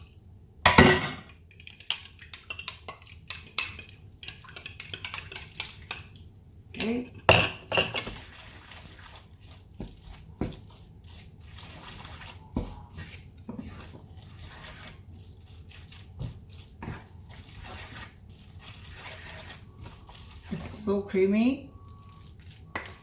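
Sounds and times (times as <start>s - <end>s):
wet pasta slopping in sauce: 8.0s - 20.9s, 21.7s - 23.0s.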